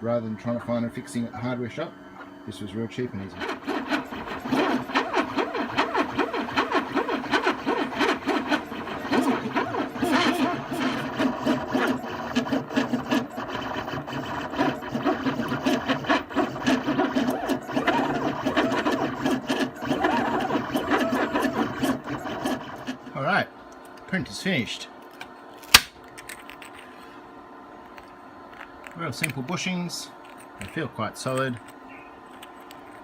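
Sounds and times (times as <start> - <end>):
stepper motors whirring: 0.5 - 25.9, 27.9 - 33.0.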